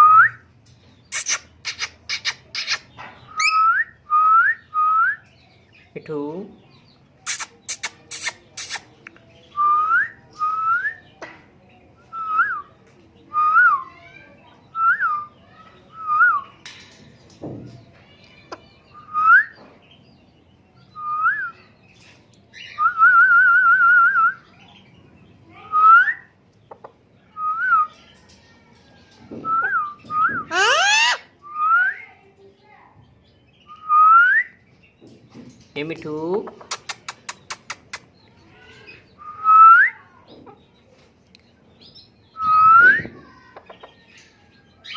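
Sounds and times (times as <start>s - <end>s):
parrot whistling: 30.5s - 31.2s.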